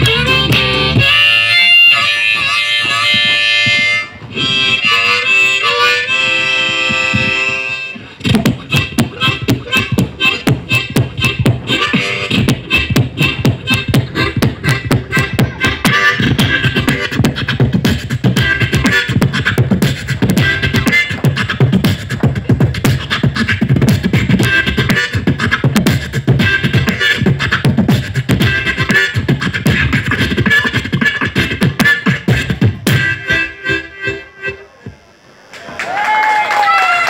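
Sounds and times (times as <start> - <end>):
beatboxing drum beats and clicks: 0.0 - 35.0
low pulsing bass: 0.0 - 35.6.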